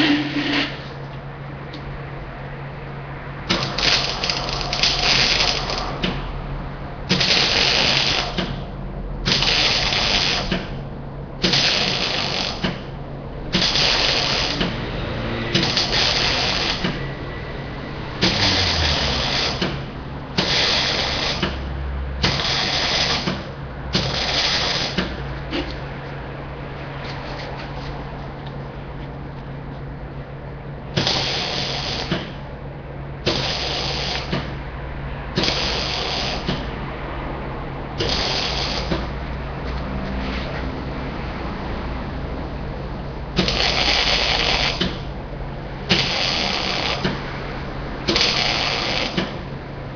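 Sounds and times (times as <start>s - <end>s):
steady low hum: 0.0s - 49.9s
arc welding crackling hiss: 3.5s - 5.9s, 7.1s - 8.4s, 9.3s - 10.6s, 11.4s - 12.7s, 13.5s - 14.7s, 15.6s - 16.9s, 18.2s - 19.6s, 22.2s - 23.3s, 24.0s - 25.0s, 31.0s - 32.2s, 33.2s - 34.4s, 35.4s - 36.5s, 38.0s - 38.9s, 43.4s - 44.9s, 45.9s - 47.1s, 48.1s - 49.2s.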